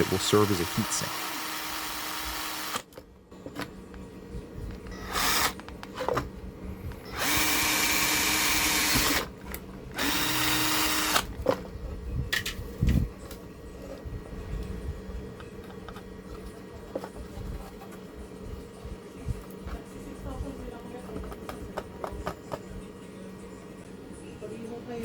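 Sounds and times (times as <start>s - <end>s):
electric drill boring circuit board: 0.0s - 2.8s, 5.0s - 5.6s, 7.1s - 9.3s, 10.0s - 11.3s.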